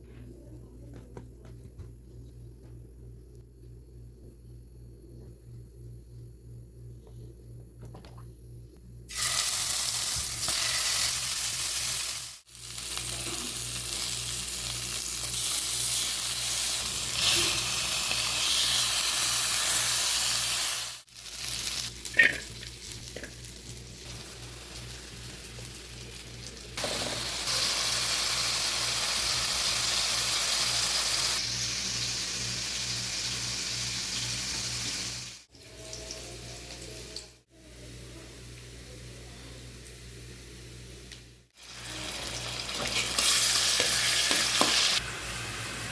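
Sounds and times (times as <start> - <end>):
food sizzling in hot oil: 9.1 - 36.8, 41.6 - 45.9.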